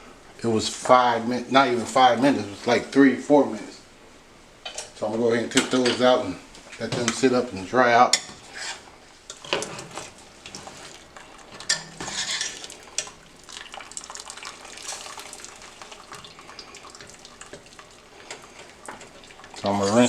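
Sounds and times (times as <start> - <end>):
metal utensils clinking on pot: 8.1 - 13.8
water splashing: 10.2 - 20.0.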